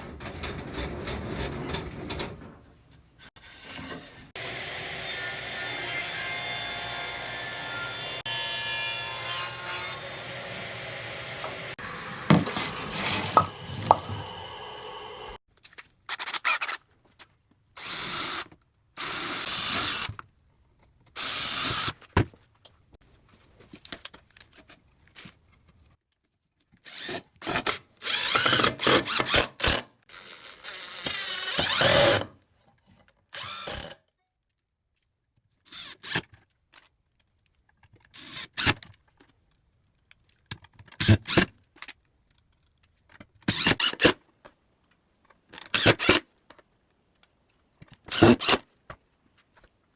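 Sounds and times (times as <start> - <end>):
power drill running: 10.0 - 15.4, 30.1 - 32.2.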